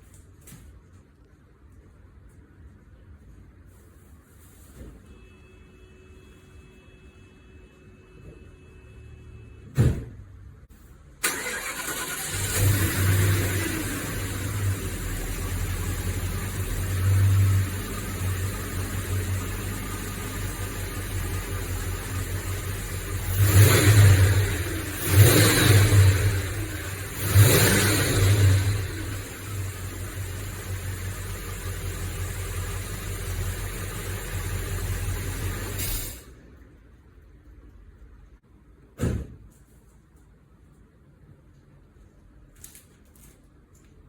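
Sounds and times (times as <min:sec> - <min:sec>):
car engine idling and revving: 0:11.4 - 0:36.2.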